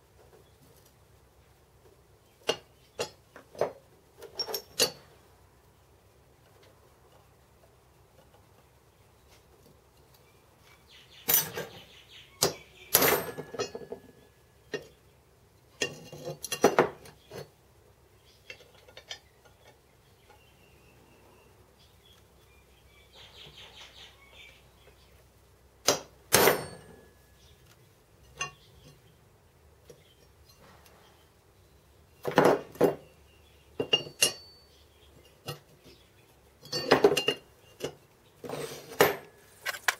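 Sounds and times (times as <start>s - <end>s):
metal tools clinking: 12.9s - 14.9s, 26.4s - 27.2s, 33.8s - 35.7s, 36.6s - 39.9s.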